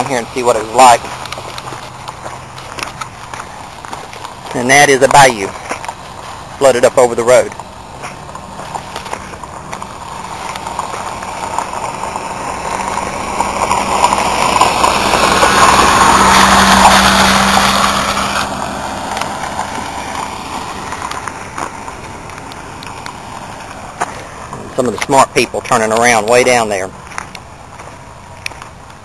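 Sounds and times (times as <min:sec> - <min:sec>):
vehicle engine hum: 0:00.0 - 0:29.0
water rushing under tyres: 0:00.0 - 0:29.0.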